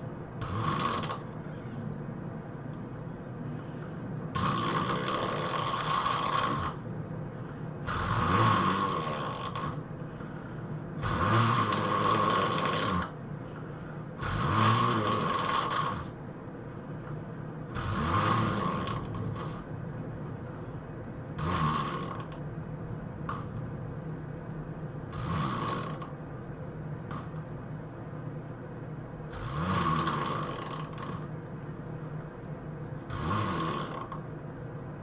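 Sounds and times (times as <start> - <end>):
quiet breathing: 0.0 - 35.0
person snoring heavily: 0.4 - 1.7, 3.6 - 16.2, 17.6 - 19.7, 21.4 - 22.4, 23.3 - 23.6, 25.1 - 26.2, 29.3 - 31.4, 33.0 - 34.3.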